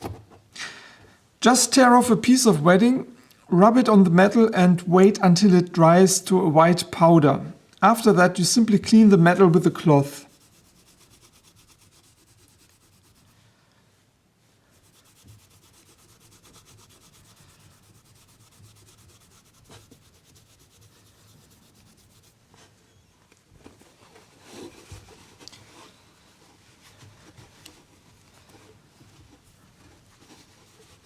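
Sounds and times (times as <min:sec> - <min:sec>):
cloth rubbing on metal: 0:08.9 - 0:13.5, 0:14.6 - 0:22.6, 0:24.4 - 0:31.0.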